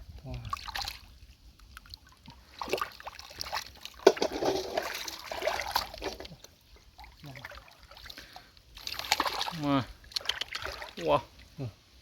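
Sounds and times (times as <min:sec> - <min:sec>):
hands splashing in muddy water: 0:01.7 - 0:06.6, 0:08.8 - 0:11.0.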